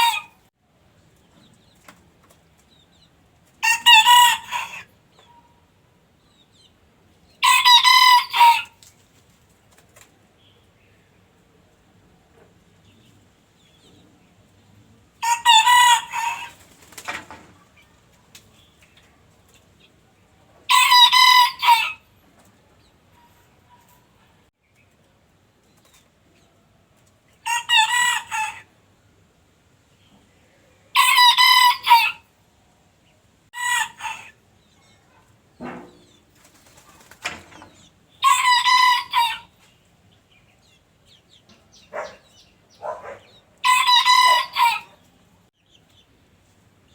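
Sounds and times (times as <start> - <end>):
rooster crowing: 31.0 - 32.2, 43.6 - 44.9.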